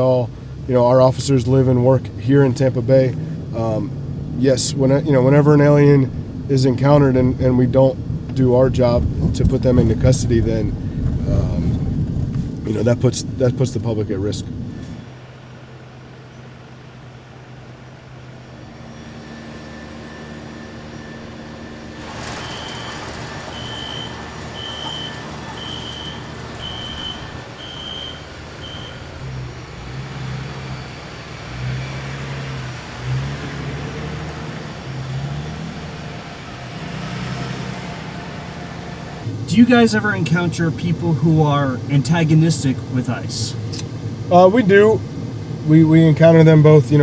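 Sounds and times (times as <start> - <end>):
vehicle engine running: 0.0 - 47.0
reversing alarm beeping: 18.9 - 32.5.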